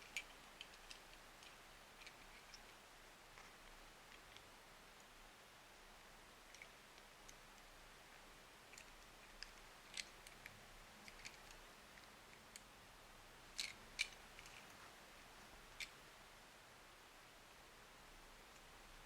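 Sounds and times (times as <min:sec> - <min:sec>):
plastic toy parts clicking: 0:00.0 - 0:02.7, 0:08.7 - 0:12.7, 0:13.6 - 0:14.6.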